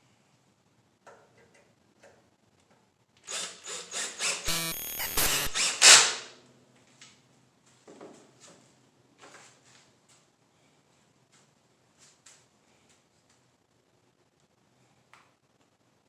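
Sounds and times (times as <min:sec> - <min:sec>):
tool rapid clicking: 0:03.3 - 0:06.3
tool whine: 0:03.3 - 0:06.3.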